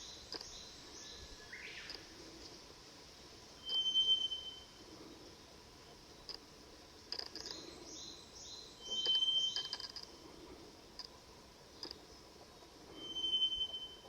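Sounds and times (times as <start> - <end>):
high-pitched bird call notes: 3.6 - 4.6, 13.0 - 14.0
thin steady whistle: 3.6 - 4.8, 8.8 - 9.8, 12.9 - 14.0.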